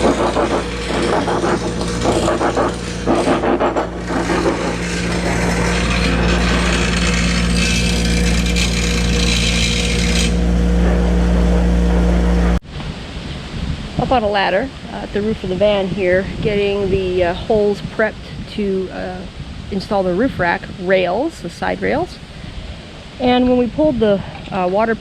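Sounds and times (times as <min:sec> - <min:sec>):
power tool grinding metal: 0:00.0 - 0:11.6.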